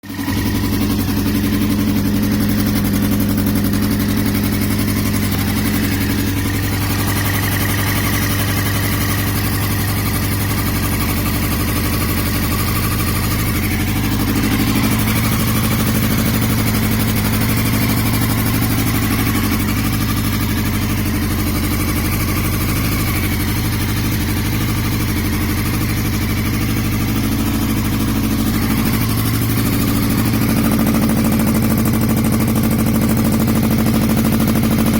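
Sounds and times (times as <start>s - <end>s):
motorcycle engine idling and misfiring: 0.0s - 34.9s.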